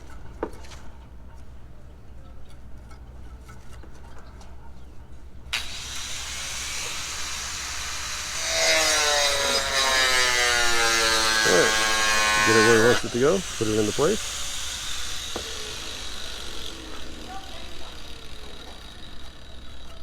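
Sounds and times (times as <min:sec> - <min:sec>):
power tool rushing hiss: 0:05.6 - 0:19.2
loud motor whine: 0:05.6 - 0:19.9.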